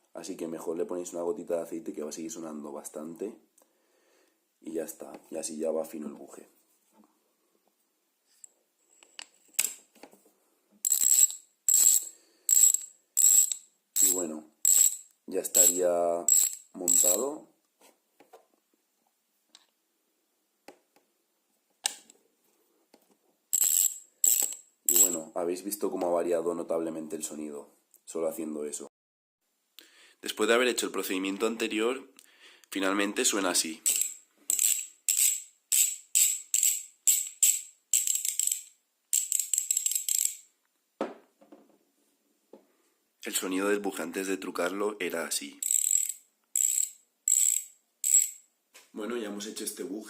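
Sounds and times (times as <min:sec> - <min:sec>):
bicycle hub ratchet clicking: 0:10.8 - 0:17.2, 0:23.5 - 0:25.2, 0:33.8 - 0:40.5, 0:45.6 - 0:48.4.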